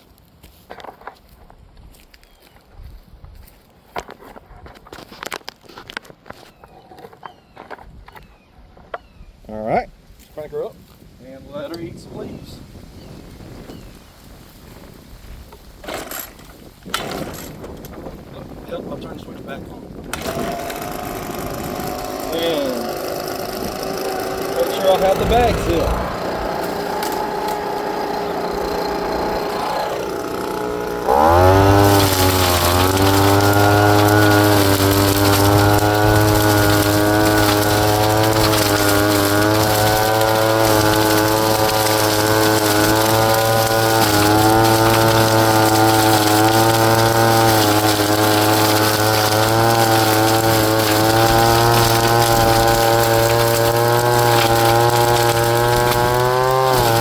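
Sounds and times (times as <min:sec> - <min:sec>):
leaf blower engine whining: 0:19.9 - 0:57.0.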